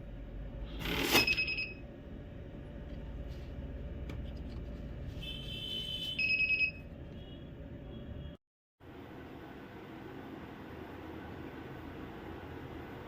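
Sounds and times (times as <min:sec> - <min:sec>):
money counting machine motor hum: 0:00.5 - 0:01.9.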